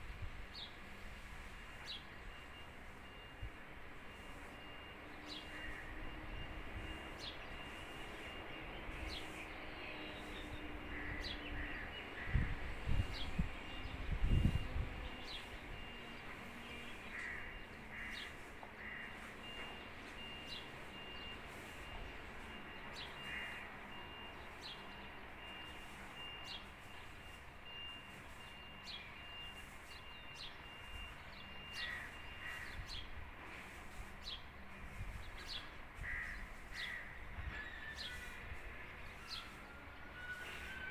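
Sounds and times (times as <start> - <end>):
harsh bird calls: 15.1 - 25.6.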